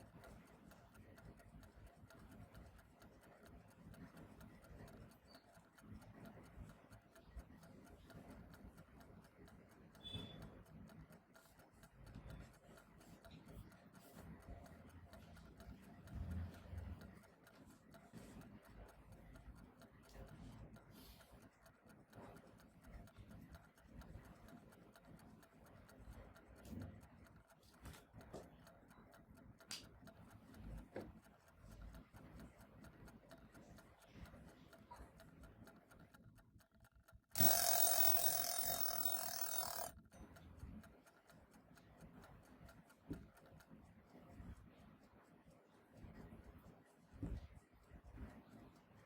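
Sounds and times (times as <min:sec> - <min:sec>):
clock ticking softly: 0:00.0 - 0:49.0
loud ring: 0:37.4 - 0:39.9.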